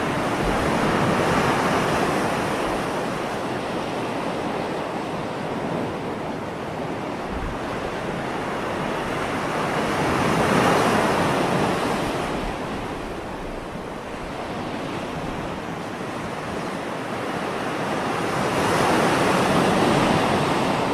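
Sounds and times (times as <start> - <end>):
sea waves breaking on rocks: 0.0 - 4.6.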